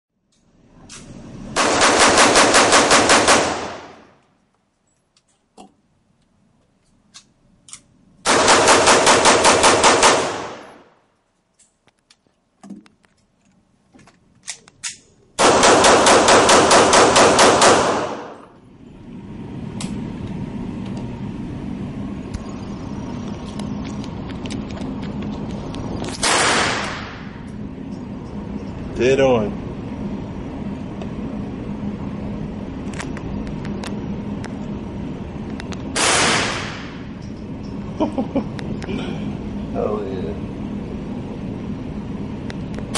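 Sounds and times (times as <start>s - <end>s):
automatic gunfire bursts: 1.6s - 4.0s, 8.3s - 10.6s, 15.4s - 18.4s.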